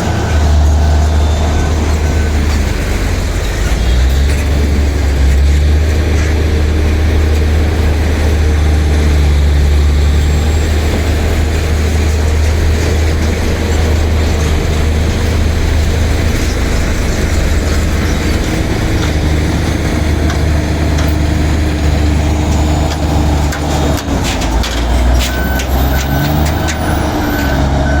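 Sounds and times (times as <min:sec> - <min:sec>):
bulldozer diesel engine running: 0:00.0 - 0:28.0
sharp metallic clicks and knocks: 0:11.5 - 0:27.6.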